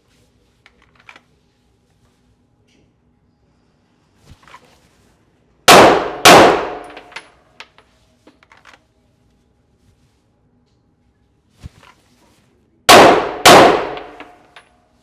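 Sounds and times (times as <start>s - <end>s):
pistol shots ringing indoors: 5.7s - 7.4s, 12.9s - 14.7s.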